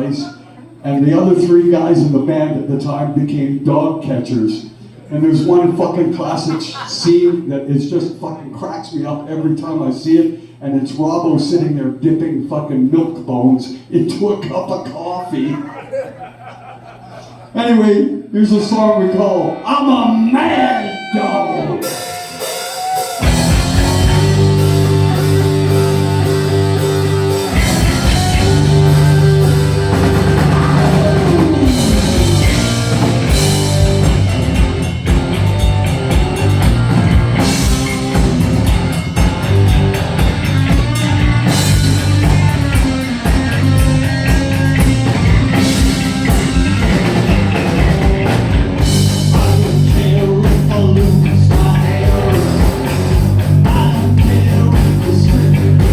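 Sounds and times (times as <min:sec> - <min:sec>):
distorted electric guitar: 0:19.5 - 0:55.9
bass guitar: 0:20.5 - 0:55.9
drums: 0:21.8 - 0:55.9.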